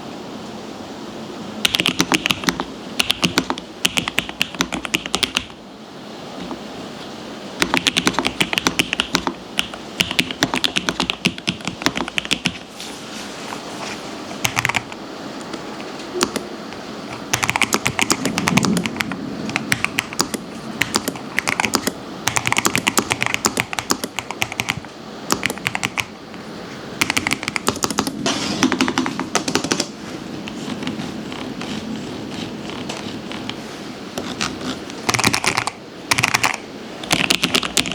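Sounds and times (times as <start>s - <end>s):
mechanical keyboard typing: 1.6s - 5.6s, 7.6s - 12.7s, 14.4s - 15.0s, 15.8s - 26.1s, 27.0s - 33.6s, 34.2s - 37.9s.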